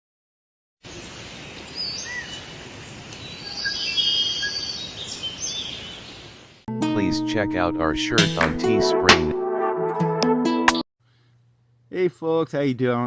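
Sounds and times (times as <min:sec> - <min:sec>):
outdoor background hiss: 0:00.8 - 0:06.6
birds chirping: 0:03.2 - 0:06.4.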